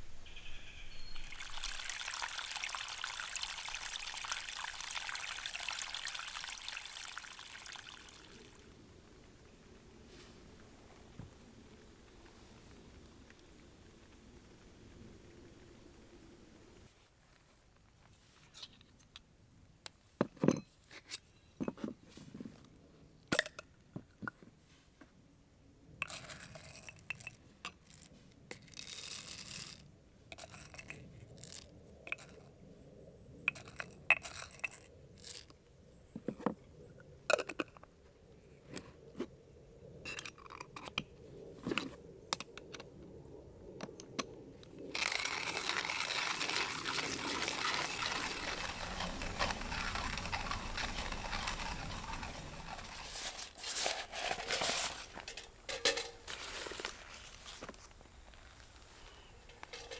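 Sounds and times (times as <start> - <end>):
crinkling rustles: 44.9 - 59.9.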